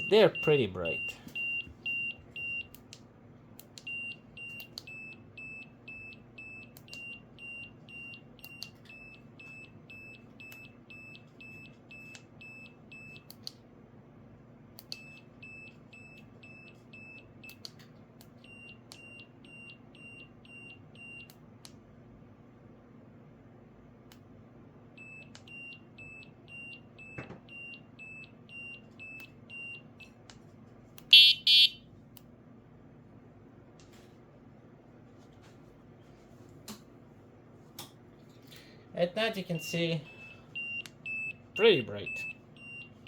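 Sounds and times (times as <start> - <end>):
short high beeps: 31.1 - 31.8.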